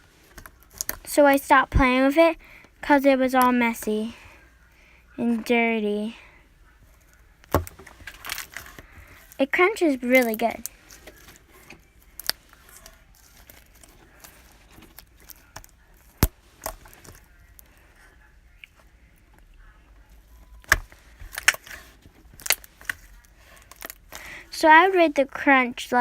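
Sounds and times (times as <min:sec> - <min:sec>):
slime crunching and popping: 0:07.4 - 0:09.4, 0:10.1 - 0:17.7, 0:20.5 - 0:24.3.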